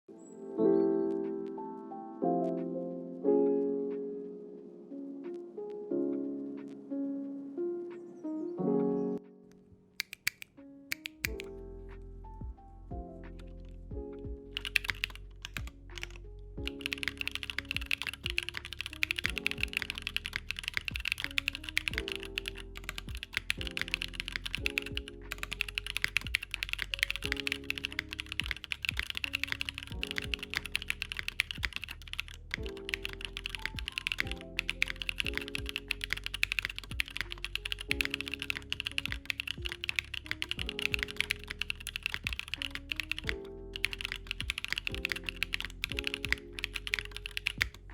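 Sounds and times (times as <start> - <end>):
clacky mechanical keyboard typing: 10.0 - 11.5, 14.5 - 47.9.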